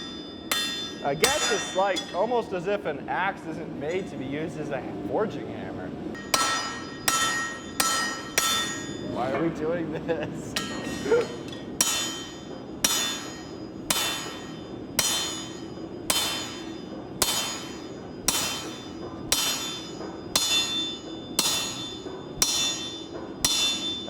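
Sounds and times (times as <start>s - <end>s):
hammer ringing on anvil: 0.0s - 2.4s, 6.2s - 9.2s, 10.6s - 24.0s.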